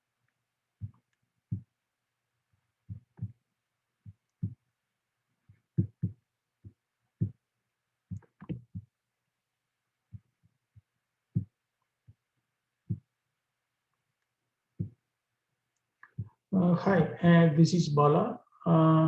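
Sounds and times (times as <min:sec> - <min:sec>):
soft low thumps: 0:00.8 - 0:01.8, 0:02.8 - 0:03.4, 0:04.0 - 0:04.7, 0:05.5 - 0:07.4, 0:08.1 - 0:09.0, 0:10.1 - 0:12.2, 0:12.8 - 0:13.1, 0:14.8 - 0:15.0, 0:16.0 - 0:17.2.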